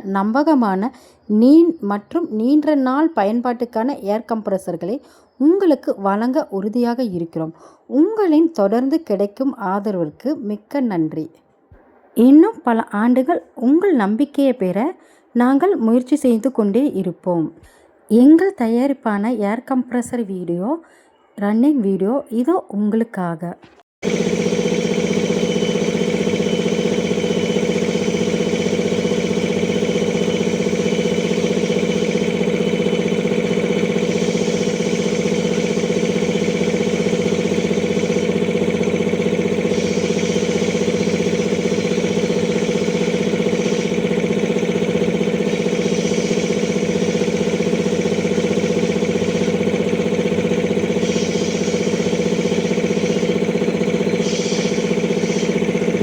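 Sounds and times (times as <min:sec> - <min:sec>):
air compressor running: 0:24.0 - 0:56.0.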